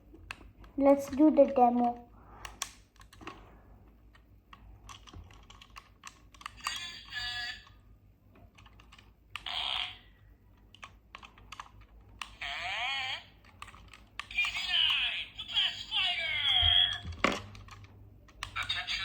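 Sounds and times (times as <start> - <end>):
toy buttons clicking: 4.9 - 7.8.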